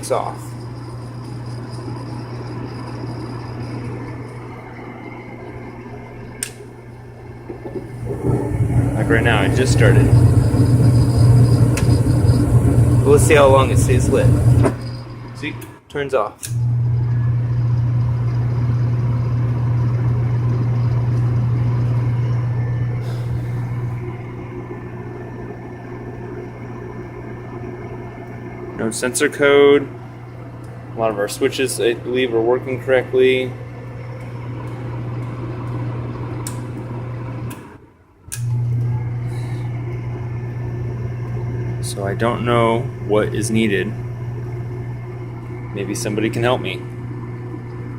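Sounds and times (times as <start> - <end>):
furnace fan motor humming: 0.0 - 47.9
furnace click: 6.4 - 6.7.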